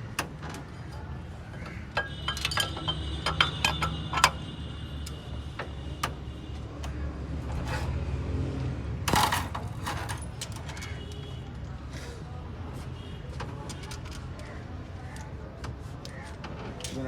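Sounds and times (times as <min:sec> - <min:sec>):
metallic clinks and taps: 0:02.0 - 0:04.4
metal clatter: 0:07.5 - 0:08.0, 0:09.1 - 0:10.9.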